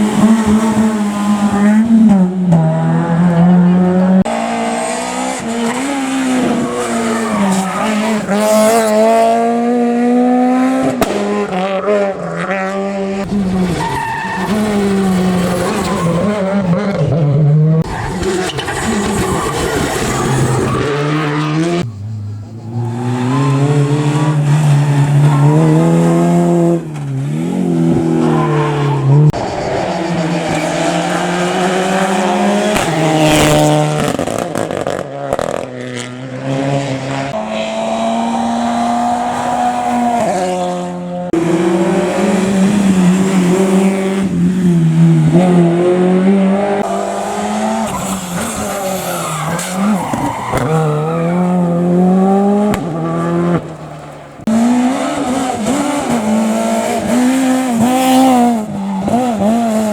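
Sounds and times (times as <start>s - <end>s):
rally car engines at full throttle: 0.0s - 59.9s
tyres squealing and skidding: 4.8s - 9.1s, 13.3s - 16.8s, 17.8s - 33.6s, 46.7s - 59.9s.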